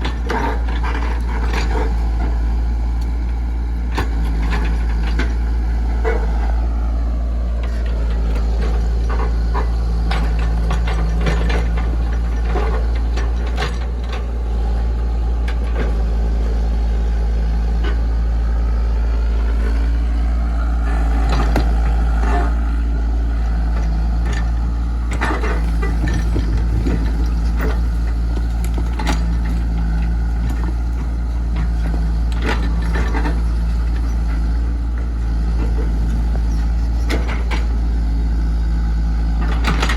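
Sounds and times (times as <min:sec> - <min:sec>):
excavator diesel engine humming: 0:00.0 - 0:39.9
metallic clanks and knocks: 0:07.8 - 0:14.2, 0:23.7 - 0:30.9.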